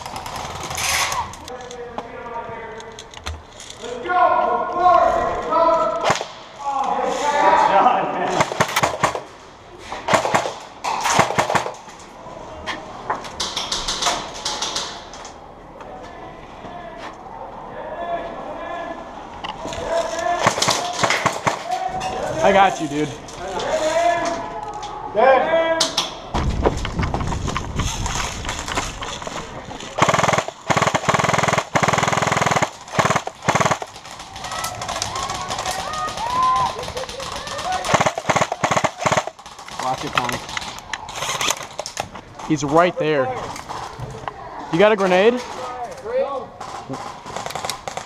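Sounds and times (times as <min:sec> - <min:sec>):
airsoft gun automatic fire: 0:08.3 - 0:09.3, 0:10.1 - 0:11.8, 0:20.4 - 0:21.7, 0:30.0 - 0:40.1, 0:47.2 - 0:48.0
airsoft gun shots: 0:37.8 - 0:39.3.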